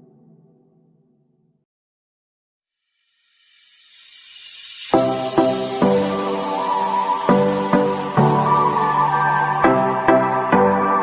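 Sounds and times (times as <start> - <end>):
hiss: 2.8 - 9.0
background music: 4.9 - 11.0.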